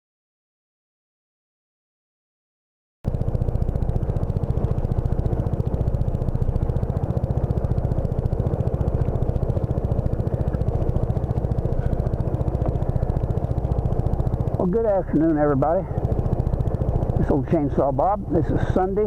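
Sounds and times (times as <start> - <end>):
scooter engine running: 3.1 - 19.0.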